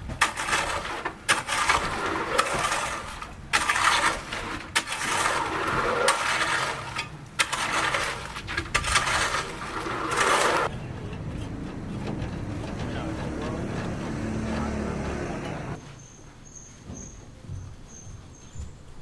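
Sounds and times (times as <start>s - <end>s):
gritty scraping and clattering: 0.0s - 15.8s.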